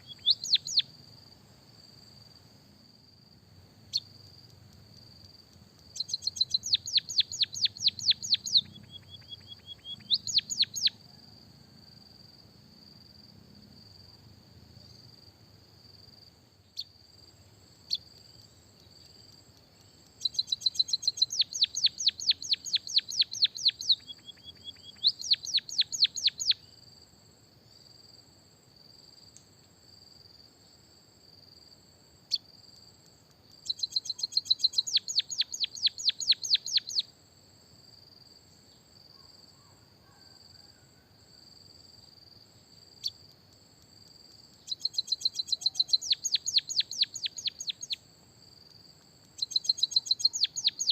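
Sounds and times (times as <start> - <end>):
bird singing rattling trills: 0.0 - 0.9, 5.9 - 11.0, 17.9 - 26.6, 33.6 - 37.0, 44.6 - 48.0, 49.4 - 50.9
high insect-like trill: 16.8 - 26.8, 33.6 - 37.1, 42.5 - 50.9.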